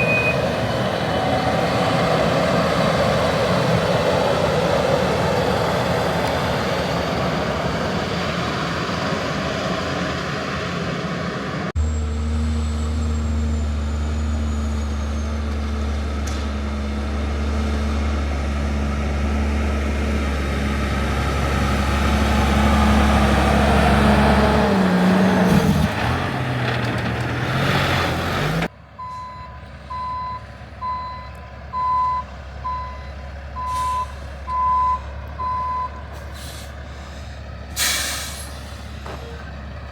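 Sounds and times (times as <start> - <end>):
reversing alarm beeping: 0.0 - 0.8, 29.0 - 36.2
heavy diesel machinery droning: 0.0 - 39.9.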